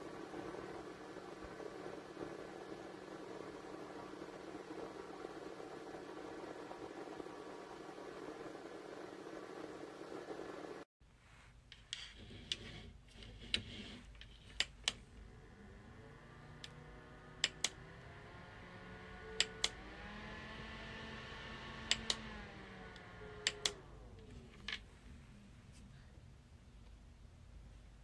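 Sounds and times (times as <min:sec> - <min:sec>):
small fan motor humming: 0:00.0 - 0:10.9, 0:15.0 - 0:24.7.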